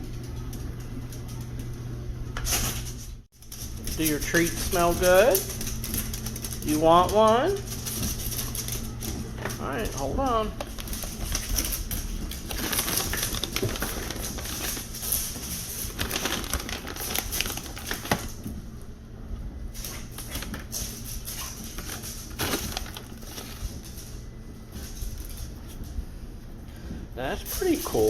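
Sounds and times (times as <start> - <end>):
plastic bag rustling: 3.4 - 18.7, 19.8 - 25.8.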